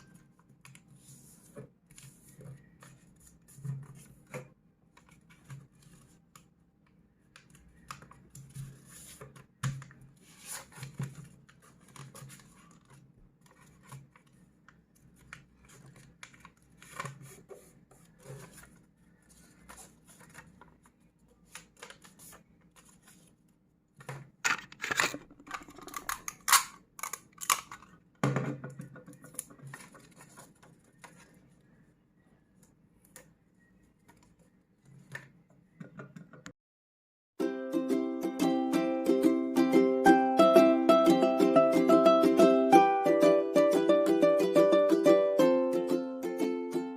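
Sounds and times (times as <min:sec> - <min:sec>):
paper rustling and folding: 0:00.0 - 0:06.5, 0:07.4 - 0:26.6, 0:28.9 - 0:35.4
paper crinkling: 0:07.5 - 0:23.5, 0:29.1 - 0:31.8.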